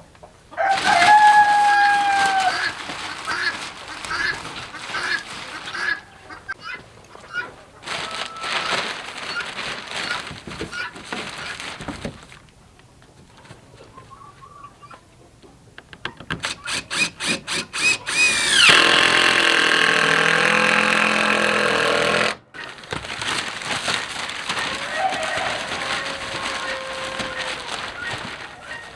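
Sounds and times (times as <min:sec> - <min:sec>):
power drill whining: 0:16.4 - 0:22.5.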